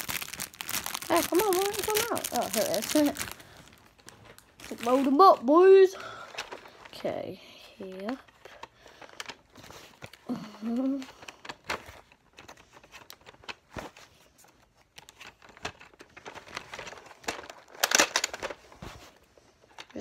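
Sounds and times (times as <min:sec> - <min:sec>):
plastic packaging crinkling: 0:00.0 - 0:07.2, 0:07.8 - 0:20.0
boy humming: 0:10.3 - 0:11.1.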